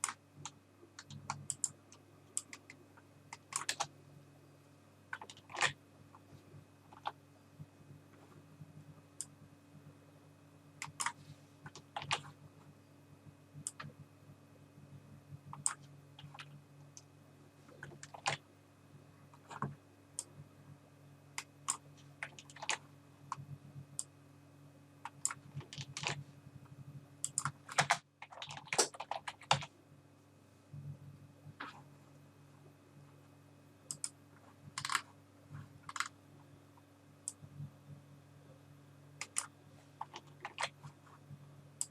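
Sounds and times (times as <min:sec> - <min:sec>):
steady low hum: 0:00.0 - 0:41.9
computer keyboard keystrokes: 0:02.4 - 0:03.9, 0:05.1 - 0:05.8, 0:10.8 - 0:12.2, 0:15.5 - 0:16.5, 0:17.8 - 0:18.4, 0:27.2 - 0:29.7, 0:34.8 - 0:35.0, 0:35.8 - 0:36.1, 0:39.2 - 0:40.8.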